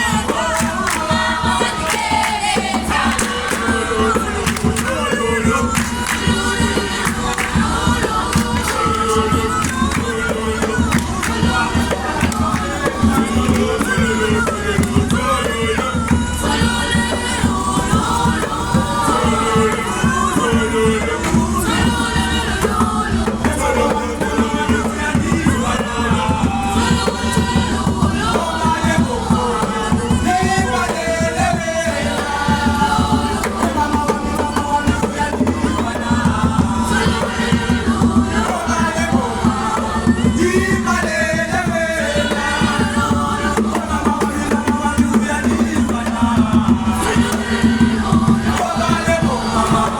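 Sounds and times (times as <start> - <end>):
children singing together: 0.0 - 49.9
steady rhythmic beat: 0.0 - 49.9.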